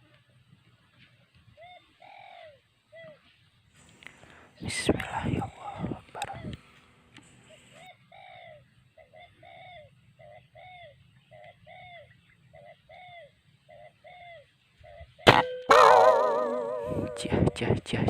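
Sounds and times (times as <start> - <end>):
dove cooing: 5.3 - 6.6, 7.5 - 17.8.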